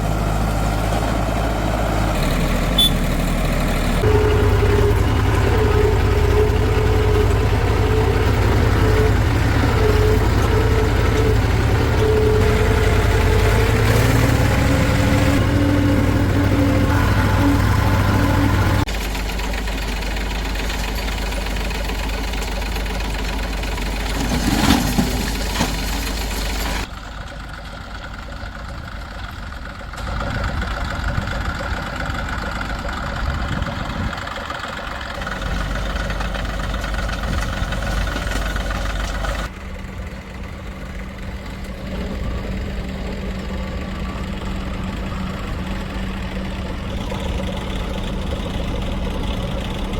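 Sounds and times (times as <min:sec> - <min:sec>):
diesel engines running: 0:00.0 - 0:49.9.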